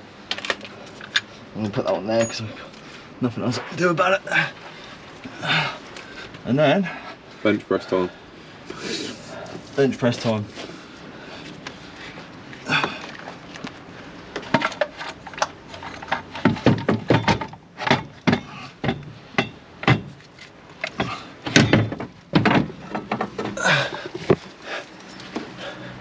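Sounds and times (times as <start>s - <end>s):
metal knocks and clunks: 14.4s - 24.5s.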